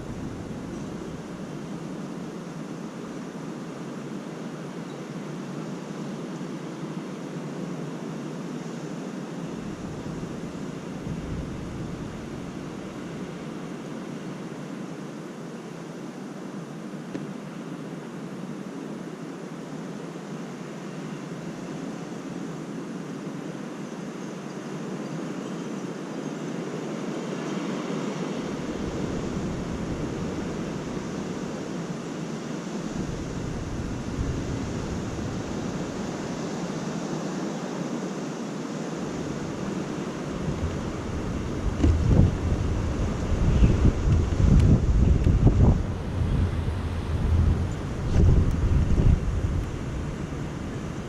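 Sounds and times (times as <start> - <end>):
wind buffeting microphone: 9.6 - 13.0, 32.9 - 36.3, 39.0 - 51.0
gusty high wind rushing: 32.8 - 36.6, 39.0 - 51.0.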